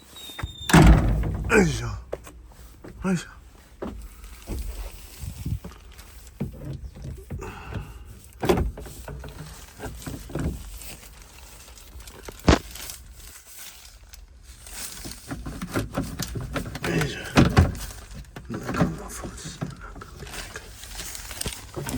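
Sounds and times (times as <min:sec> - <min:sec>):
parts knocking and rattling: 0:00.4 - 0:03.0, 0:03.7 - 0:11.2, 0:15.0 - 0:21.9.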